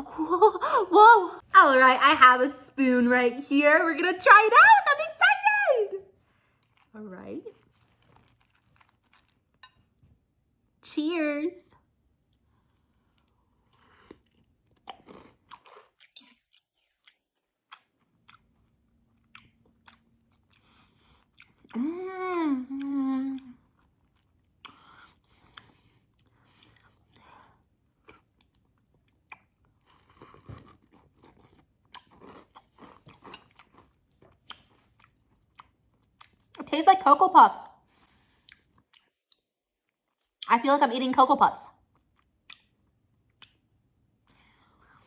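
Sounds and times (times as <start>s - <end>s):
person chewing cereal: 6.3s - 7.0s, 7.6s - 10.1s, 12.0s - 21.8s, 22.7s - 36.6s, 37.8s - 40.4s, 41.8s - 45.0s
person humming: 21.8s - 23.5s.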